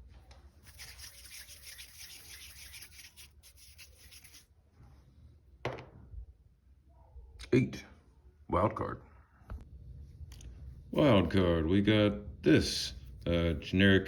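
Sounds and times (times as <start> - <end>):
rubbing handling noise: 0.6 - 4.5.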